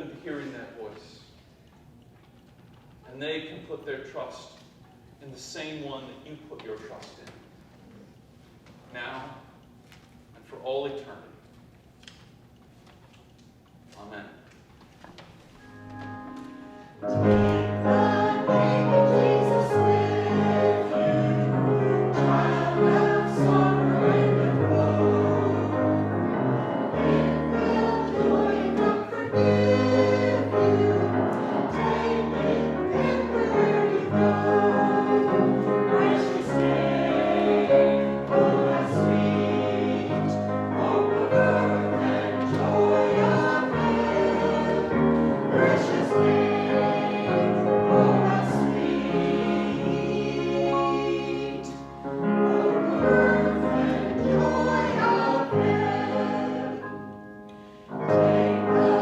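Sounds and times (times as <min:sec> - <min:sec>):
choir singing a hymn: 0:15.6 - 0:59.0.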